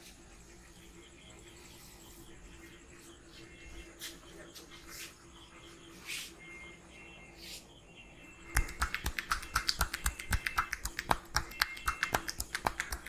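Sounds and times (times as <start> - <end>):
hands slapping head: 8.5 - 13.0.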